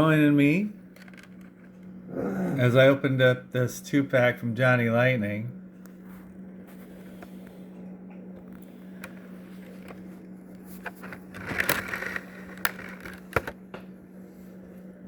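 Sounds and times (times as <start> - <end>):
steady low hum: 0.0 - 15.0
scraping rustle: 9.4 - 13.4.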